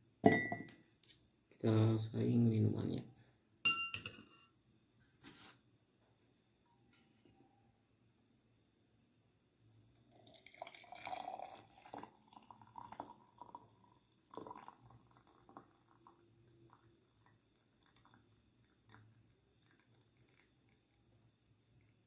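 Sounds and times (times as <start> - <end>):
liquid trickling into a glass: 10.1 - 22.0
drips: 10.2 - 22.0.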